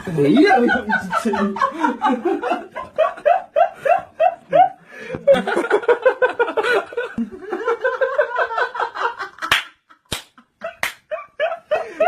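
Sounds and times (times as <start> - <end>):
group of people laughing: 0.0 - 12.0
sharp smacks: 9.5 - 11.0.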